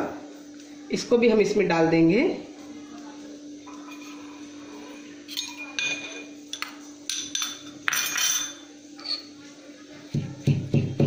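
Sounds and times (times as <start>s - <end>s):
metal utensils clinking and scraping: 3.7s - 9.4s.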